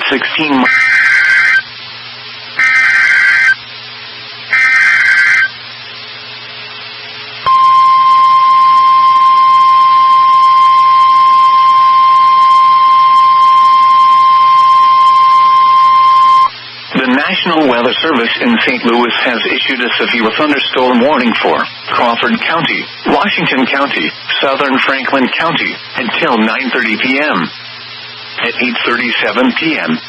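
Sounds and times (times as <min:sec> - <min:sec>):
warbling data bursts: 0:00.0 - 0:01.7, 0:02.6 - 0:03.6, 0:04.5 - 0:05.6
steady warning alarm tone: 0:00.6 - 0:01.7, 0:02.6 - 0:03.6, 0:04.5 - 0:05.6, 0:07.5 - 0:16.5.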